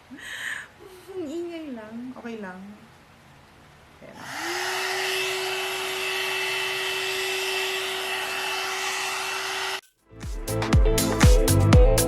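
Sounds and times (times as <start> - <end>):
hair dryer motor whine: 4.2 - 9.9
dance music with strong beat: 10.2 - 12.0.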